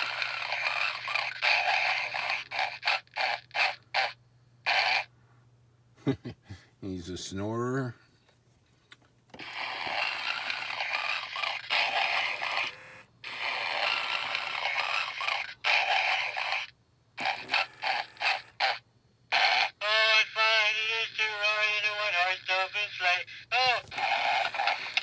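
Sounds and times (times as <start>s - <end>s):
recorded snoring from small speaker: 0.0s - 5.1s, 9.4s - 19.9s, 24.0s - 25.0s
man's voice from toy: 6.8s - 8.0s, 19.6s - 25.0s.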